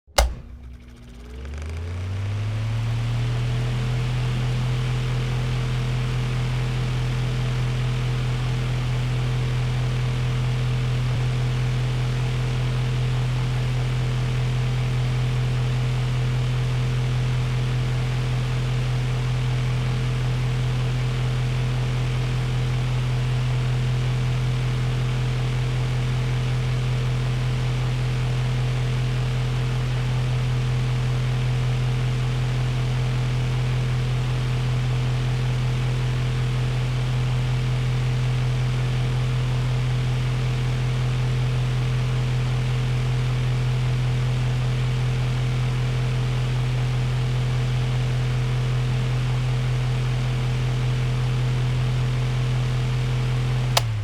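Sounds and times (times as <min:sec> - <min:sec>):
fan switch click: 0:00.1 - 0:01.1.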